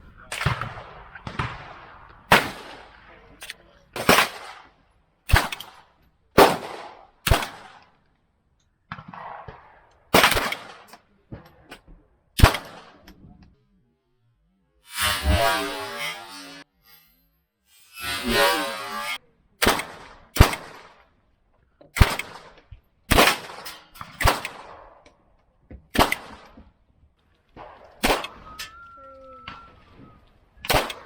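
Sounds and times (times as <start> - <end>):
gunshots with echo: 0.2 - 3.4, 6.4 - 7.8, 8.9 - 10.9.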